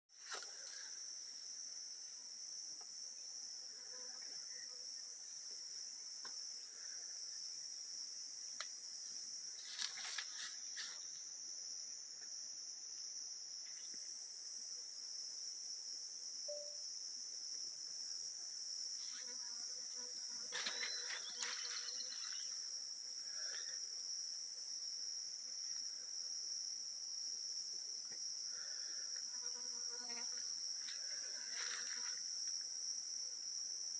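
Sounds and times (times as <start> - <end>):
crickets trilling: 0.2 - 33.9.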